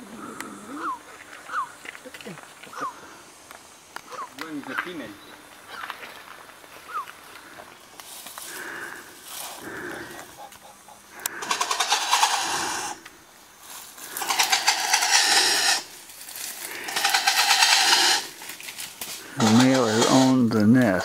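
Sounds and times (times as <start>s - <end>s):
bird rasping hisses: 8.5s - 13.0s, 14.0s - 18.4s.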